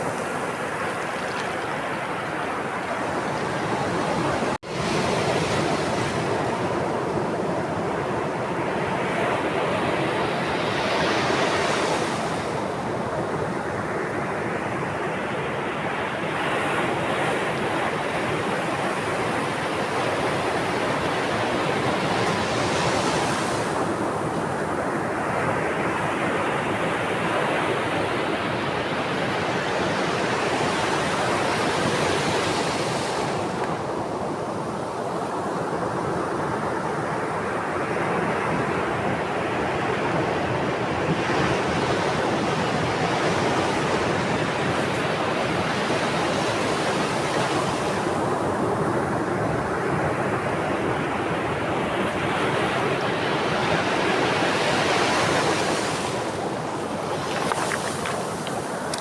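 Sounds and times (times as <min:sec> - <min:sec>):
sea waves washing on shore: 0:00.0 - 0:59.0.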